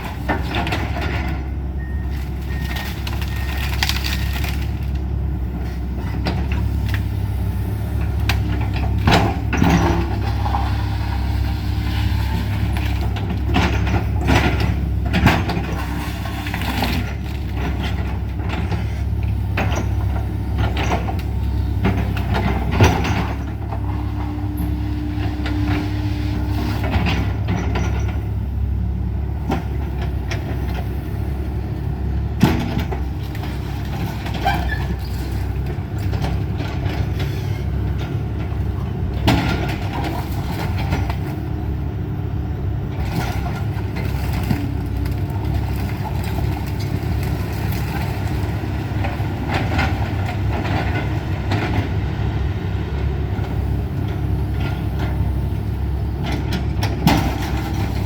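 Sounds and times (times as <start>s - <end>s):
excavator diesel engine running: 0.0s - 58.0s
wood and debris crashing: 2.4s - 5.0s, 43.1s - 50.9s.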